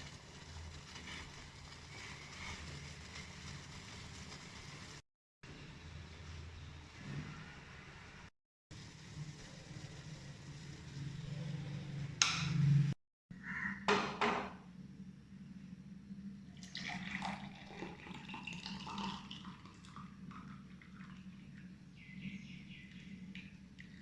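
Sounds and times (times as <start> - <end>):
liquid sounds: 16.4 - 24.0.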